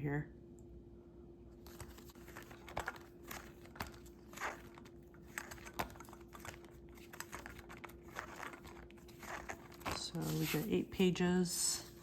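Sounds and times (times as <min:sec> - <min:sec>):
faint steady hum: 0:00.0 - 0:12.0
paper pages rustling: 0:01.6 - 0:11.2.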